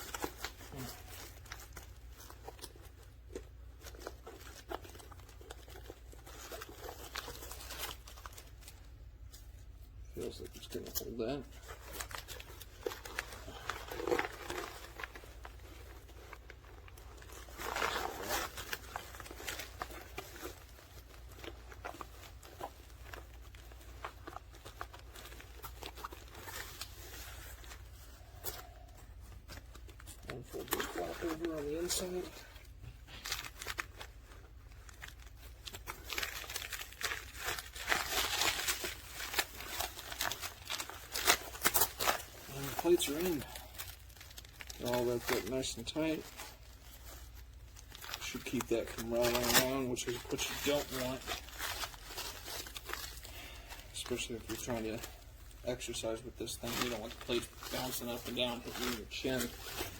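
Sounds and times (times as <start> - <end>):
nylon vest rustling: 0.0 - 59.9.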